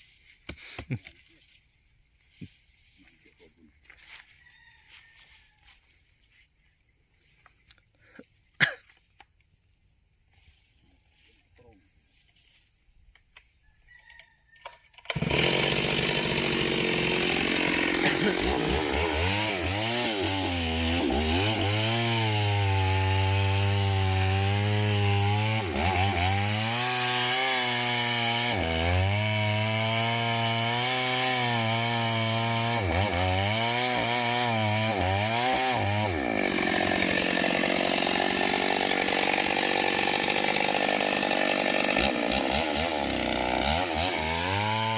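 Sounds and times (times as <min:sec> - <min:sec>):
chainsaw cutting wood: 0:15.0 - 0:44.9.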